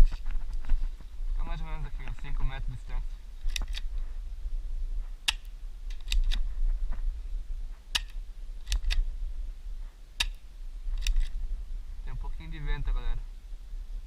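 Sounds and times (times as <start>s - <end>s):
wind rumble on microphone: 0.0s - 14.0s
airsoft pistol clicks and snaps: 3.4s - 4.0s, 5.2s - 6.5s, 7.9s - 9.1s, 10.2s - 11.4s.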